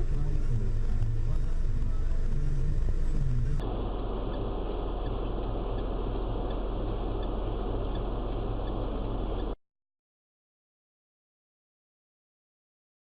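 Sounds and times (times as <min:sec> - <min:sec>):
road and engine noise inside car: 0:00.0 - 0:09.6.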